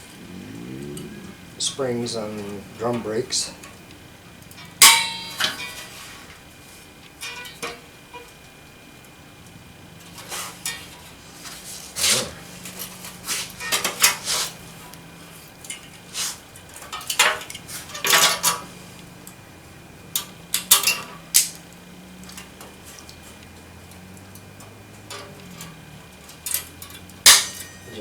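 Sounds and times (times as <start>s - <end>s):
metal springs clinking and scraping: 4.4s - 6.4s, 7.2s - 8.4s, 10.0s - 28.0s.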